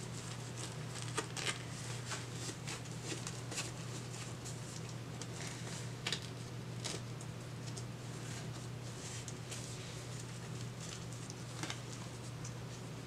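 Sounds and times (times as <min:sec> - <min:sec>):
diaper rustling and crinkling: 0:00.0 - 0:07.1
steady low hum: 0:00.0 - 0:13.0.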